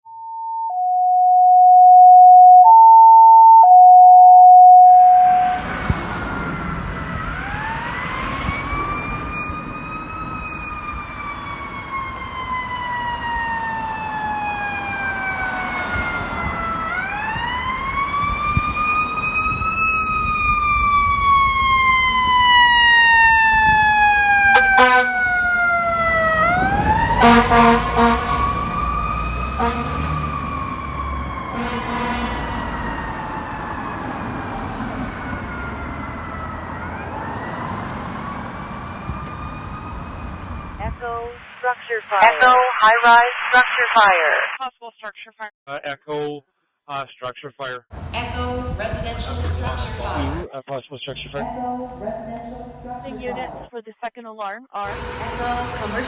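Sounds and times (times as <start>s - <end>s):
alternating electronic tones: 0.7s - 5.6s
fire truck siren wailing: 0.7s - 41.0s, 54.8s - 56.0s
road noise: 4.8s - 41.6s, 47.9s - 50.5s, 51.1s - 53.7s, 54.8s - 56.0s
air horn blasts: 24.5s - 25.3s, 27.1s - 28.6s, 29.5s - 30.7s, 31.5s - 32.8s, 54.9s - 56.0s.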